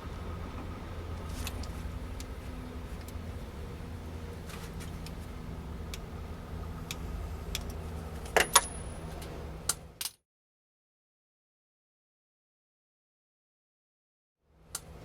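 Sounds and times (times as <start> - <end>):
low engine hum: 0.0 - 10.0
sharp metallic clinks: 8.4 - 9.0.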